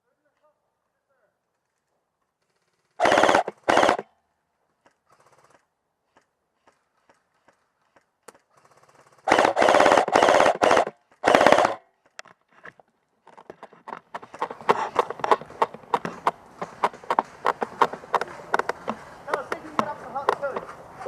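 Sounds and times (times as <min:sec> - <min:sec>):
airsoft gun firing bursts: 0:02.4 - 0:04.1, 0:05.1 - 0:06.8, 0:08.4 - 0:11.9.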